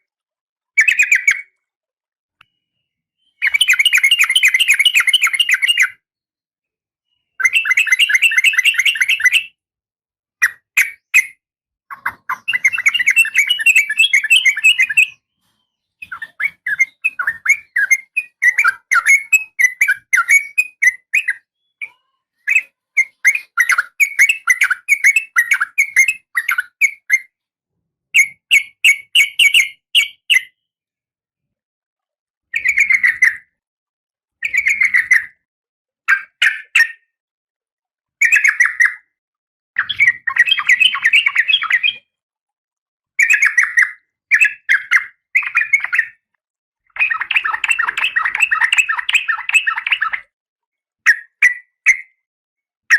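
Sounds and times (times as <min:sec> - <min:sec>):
bird rapid chattering call: 0:47.0 - 0:50.3.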